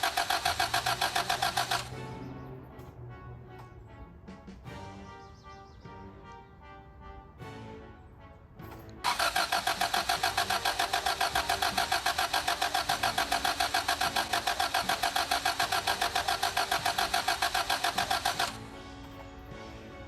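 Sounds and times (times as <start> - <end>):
car engine cranking: 0.0 - 2.0, 9.0 - 18.7.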